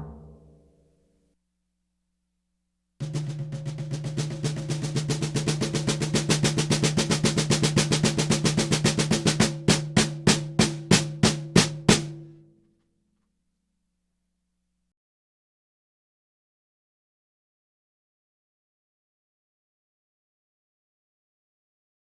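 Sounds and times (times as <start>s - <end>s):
mesh drum roll and strokes: 0.0s - 0.5s.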